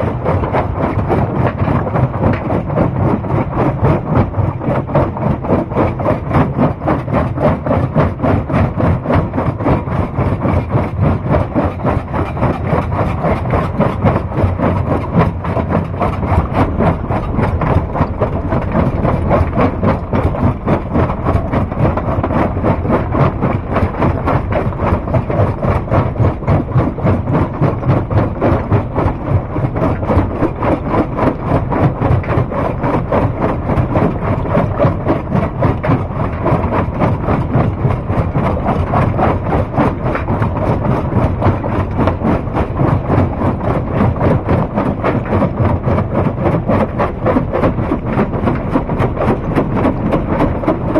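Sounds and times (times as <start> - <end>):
heavy machinery pulsing drone: 0.0 - 50.9.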